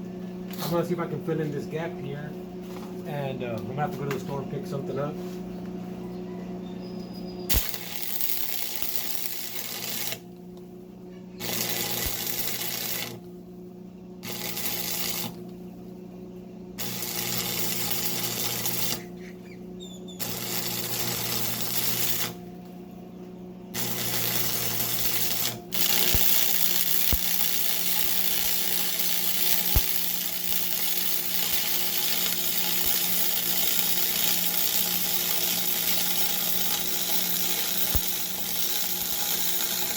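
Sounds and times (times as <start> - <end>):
welding machine electrical hum: 0.0 - 39.9
welding arc crackling and hissing: 7.5 - 10.2, 11.4 - 13.2, 14.2 - 15.4, 16.8 - 19.2, 20.2 - 22.4, 23.8 - 39.9.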